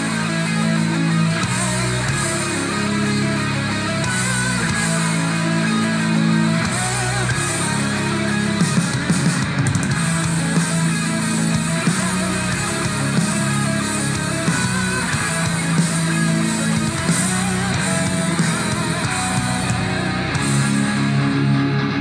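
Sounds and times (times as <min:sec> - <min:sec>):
heavy metal music on speaker: 0:00.0 - 0:22.0.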